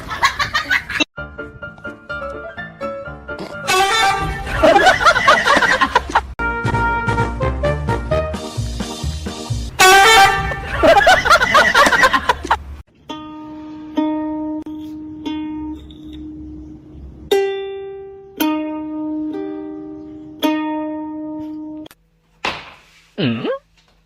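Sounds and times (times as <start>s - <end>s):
plucked string melody: 1.2s - 5.0s, 12.9s - 21.9s.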